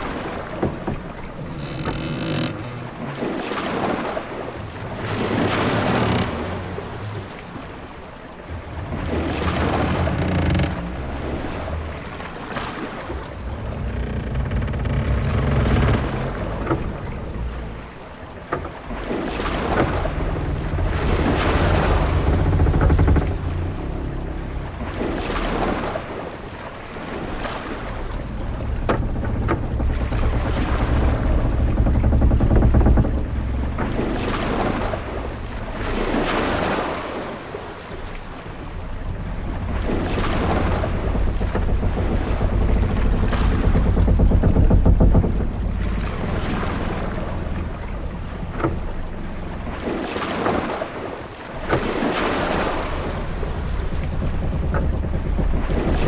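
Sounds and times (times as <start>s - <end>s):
low rumble of wind and water: 0.0s - 56.0s
ship creaks: 0.0s - 56.0s
waves washing against hull: 0.0s - 56.0s.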